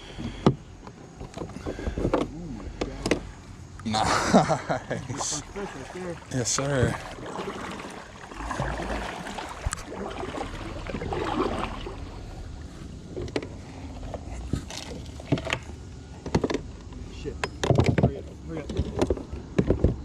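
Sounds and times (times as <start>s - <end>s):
background hiss: 0.0s - 17.4s
knocks and clicks on kayak hull: 0.2s - 3.3s, 8.6s - 9.9s, 13.2s - 20.0s.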